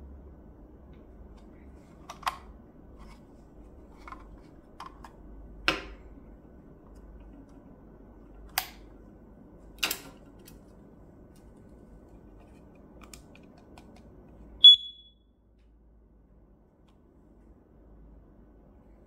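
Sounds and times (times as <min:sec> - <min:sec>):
high-pitched alarm beep: 0:14.6 - 0:15.2.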